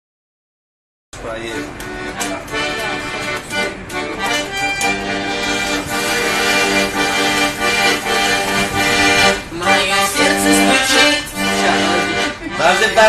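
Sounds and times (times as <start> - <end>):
sustained instrumental chords: 1.2 - 13.0
sharp clicks: 1.8 - 5.0
steady low drone: 2.8 - 9.6.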